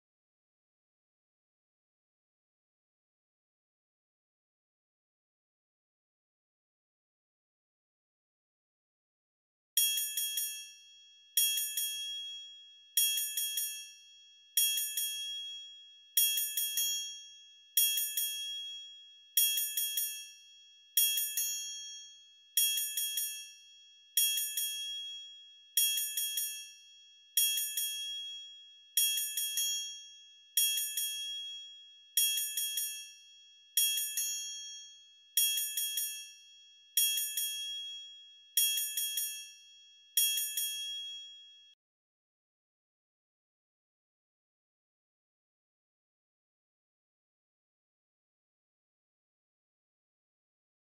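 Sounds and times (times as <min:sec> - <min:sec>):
small high-pitched bell ringing: 0:09.8 - 0:41.8.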